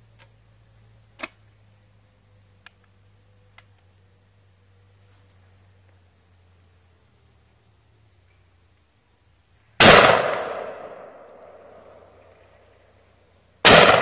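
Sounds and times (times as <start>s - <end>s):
shotgun blasts with ringing decay: 9.8s - 12.4s, 13.6s - 14.0s.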